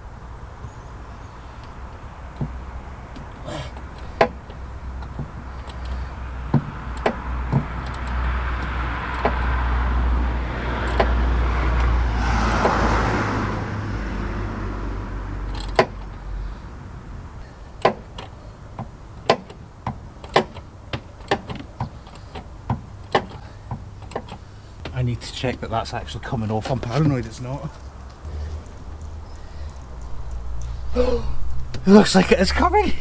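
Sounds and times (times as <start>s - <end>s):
ratchet clicking: 1.5s - 10.1s, 10.8s - 11.2s
low rumble and rushing noise: 24.8s - 33.0s.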